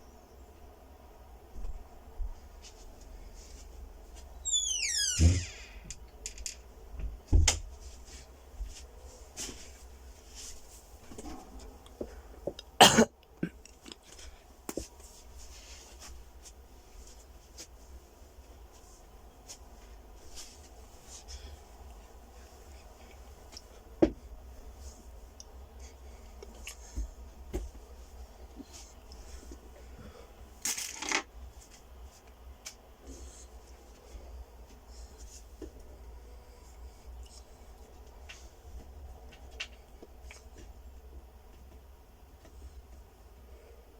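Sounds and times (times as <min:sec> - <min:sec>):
person coughing: 0:12.8 - 0:13.6.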